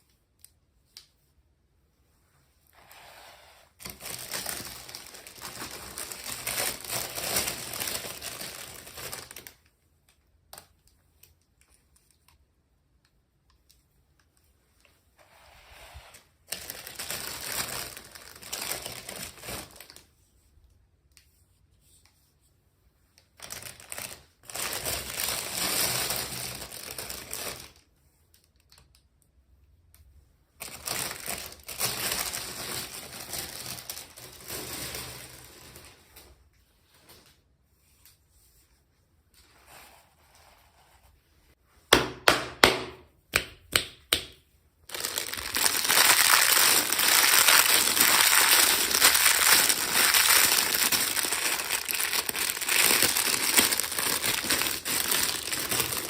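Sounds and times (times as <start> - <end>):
plastic packaging crinkling: 3.8 - 9.6, 16.4 - 20.1, 23.4 - 27.8, 30.6 - 36.3, 44.9 - 56.0.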